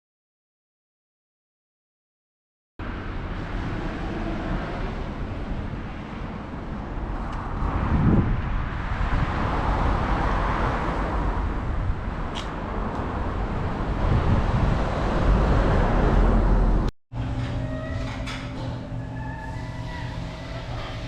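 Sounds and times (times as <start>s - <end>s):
vehicle passing: 2.8s - 16.9s
road traffic rumble: 2.8s - 21.0s.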